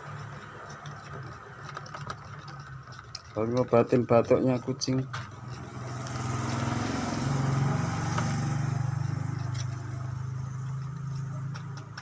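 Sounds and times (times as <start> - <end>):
motor engine running: 5.1 - 12.0.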